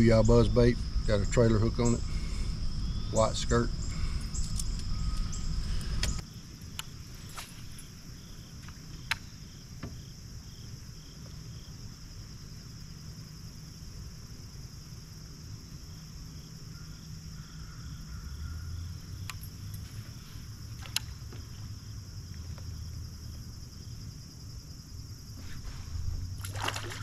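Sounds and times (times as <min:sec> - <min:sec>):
faint pulsing chirp: 0:00.0 - 0:09.6, 0:15.2 - 0:24.1
crickets and insects chirping: 0:00.0 - 0:27.0.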